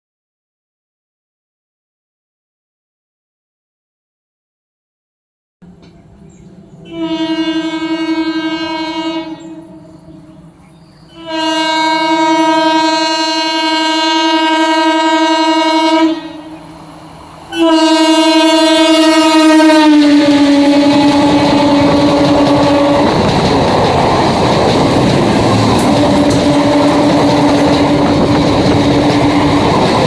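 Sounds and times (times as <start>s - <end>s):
passing train rumble: 5.6s - 30.0s
train horn blasts: 6.8s - 16.8s, 17.5s - 23.3s, 25.4s - 29.8s.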